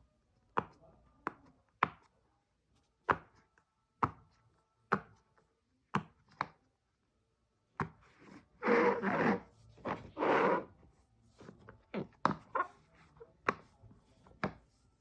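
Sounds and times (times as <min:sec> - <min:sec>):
rubbing over silicone toy: 0:08.2 - 0:15.0.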